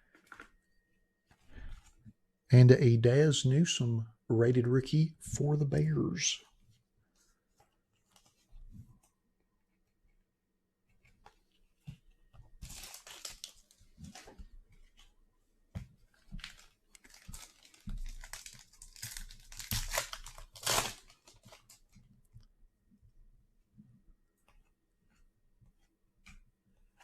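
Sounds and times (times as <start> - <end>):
foil wrapper tearing and crinkling: 12.6 - 13.7, 16.4 - 21.8.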